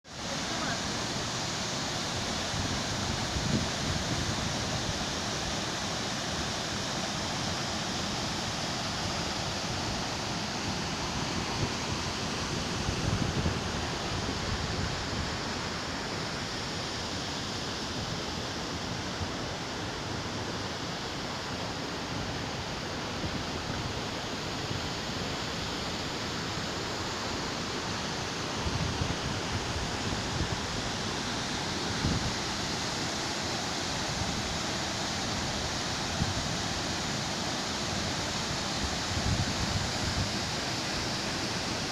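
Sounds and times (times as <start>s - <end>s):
waterfall rushing: 0.1s - 41.9s
wind rumble on microphone: 2.6s - 5.0s, 12.8s - 15.4s, 39.1s - 40.3s.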